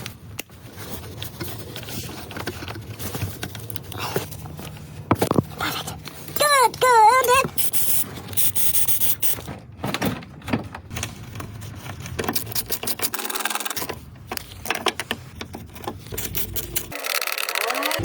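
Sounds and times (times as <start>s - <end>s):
mechanical clicking and knocking: 12.1s - 18.0s.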